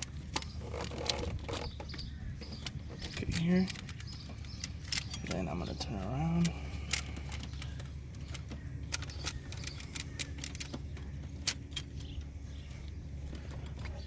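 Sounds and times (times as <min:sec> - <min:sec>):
clicks and rattles of hose handling: 0:00.0 - 0:14.0
steady low hum: 0:00.0 - 0:14.0.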